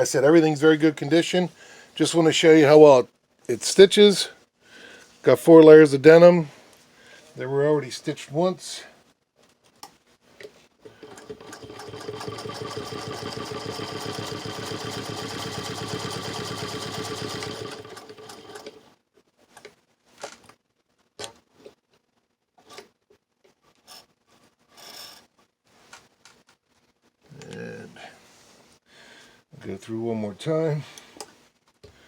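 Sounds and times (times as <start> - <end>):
sewing machine clattering: 10.9 - 18.8
sewing machine clicks: 11.0 - 18.8.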